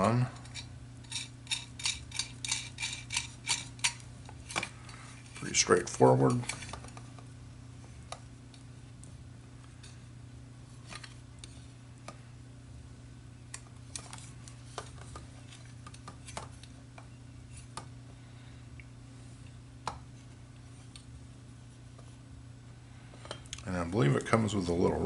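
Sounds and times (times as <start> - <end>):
steady low hum: 0.0 - 25.0
small metal parts clicking: 0.4 - 4.6.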